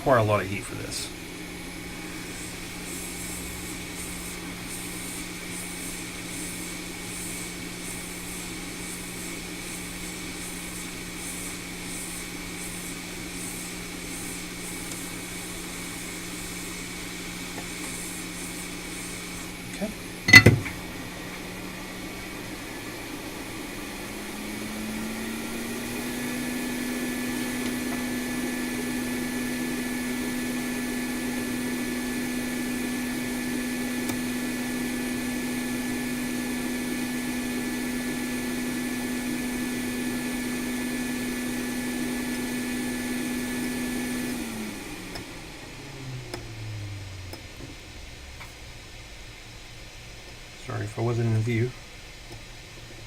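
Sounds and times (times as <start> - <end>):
hot air blower humming: 0.0 - 53.0
faint high whine: 45.0 - 51.8.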